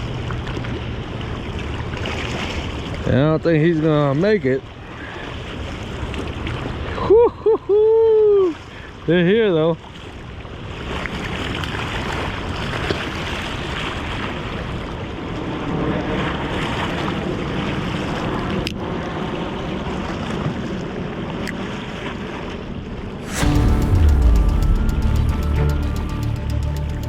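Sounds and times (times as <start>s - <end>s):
wind: 0.0s - 27.0s
water noise: 23.0s - 27.0s.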